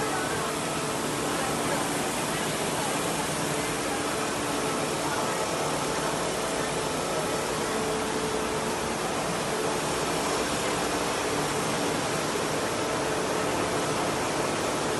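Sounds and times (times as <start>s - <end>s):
factory machinery running: 0.0s - 14.9s.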